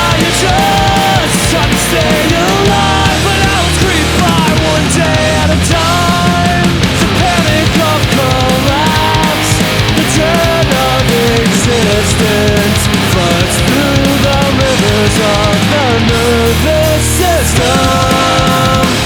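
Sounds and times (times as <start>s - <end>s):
instrumental punk rock: 0.0s - 19.0s.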